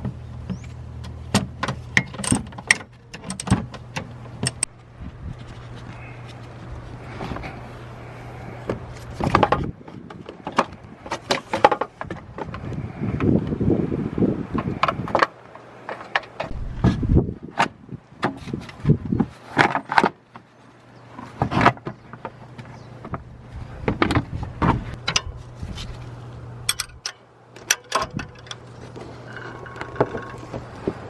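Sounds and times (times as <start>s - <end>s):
steady low hum: 0.0s - 18.1s
hand tools clinking on metal: 26.7s - 28.7s.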